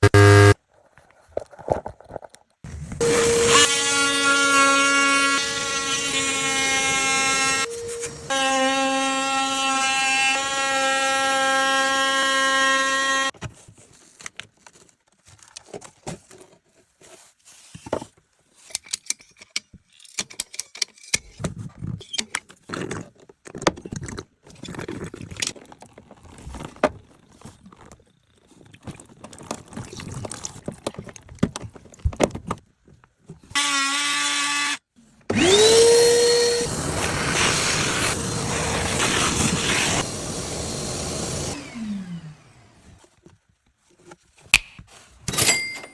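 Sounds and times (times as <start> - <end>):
hands working on plastic pipe: 10.1 - 33.6, 42.8 - 45.3.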